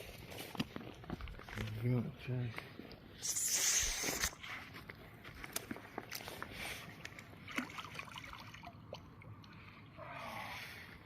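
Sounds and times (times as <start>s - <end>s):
water splashing and sloshing: 4.3s - 11.0s.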